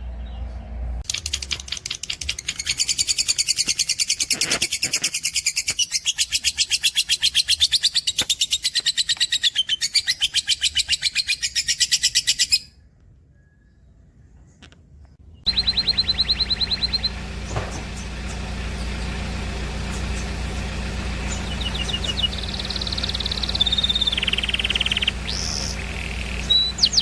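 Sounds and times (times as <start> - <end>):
songbird fast high trill: 15.5 - 27.0.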